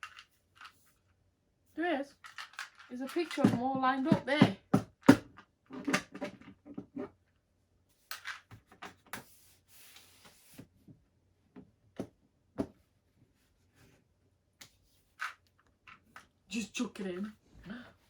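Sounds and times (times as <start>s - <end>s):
plastic case clicks and knocks: 3.2s - 6.9s.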